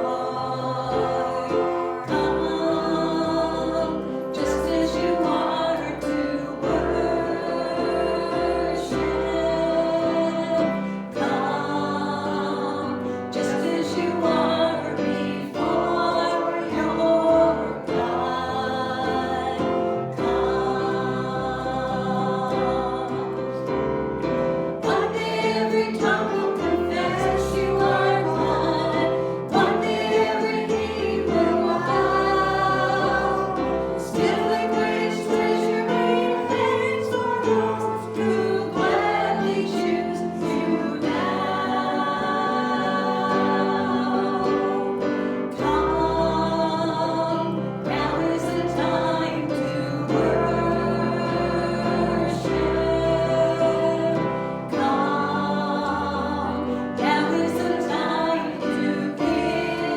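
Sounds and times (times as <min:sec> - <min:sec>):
congregation singing a gospel song: 0:00.0 - 0:59.9
instrumental accompaniment: 0:00.0 - 0:59.9.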